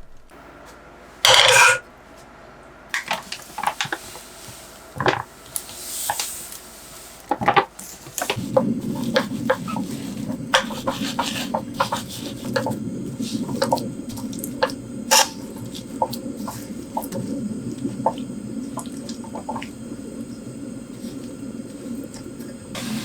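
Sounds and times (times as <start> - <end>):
liquid dripping and plopping: 8.1 - 22.8.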